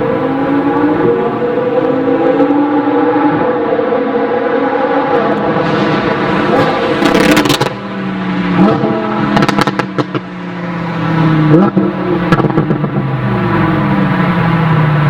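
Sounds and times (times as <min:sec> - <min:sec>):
sports car engine revving: 0:00.0 - 0:15.0
exhaust crackles and pops: 0:06.5 - 0:07.8, 0:08.6 - 0:10.3, 0:11.5 - 0:13.1.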